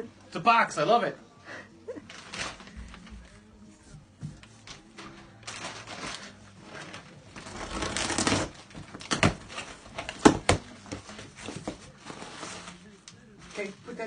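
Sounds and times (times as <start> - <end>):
cardboard tearing: 5.0 - 13.7.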